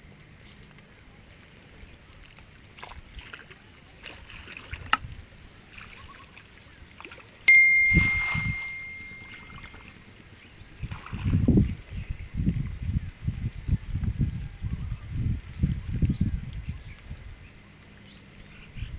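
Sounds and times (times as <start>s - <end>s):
metallic ding: 7.5s - 9.7s.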